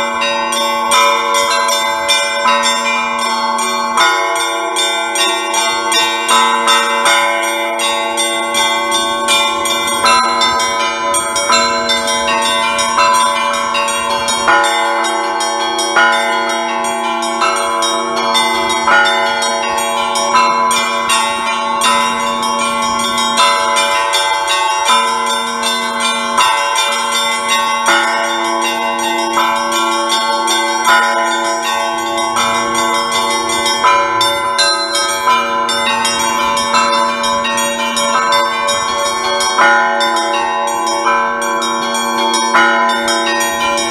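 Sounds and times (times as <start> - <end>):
large low bells ringing: 0.0 - 43.9
small bells chiming rapidly: 0.0 - 43.9.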